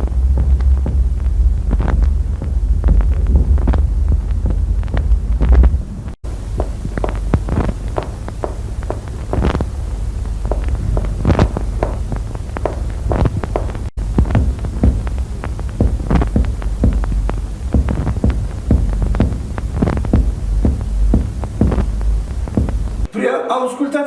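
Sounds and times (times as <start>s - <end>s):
low hum: 0.0s - 23.1s
finger taps on chest: 10.4s - 23.1s.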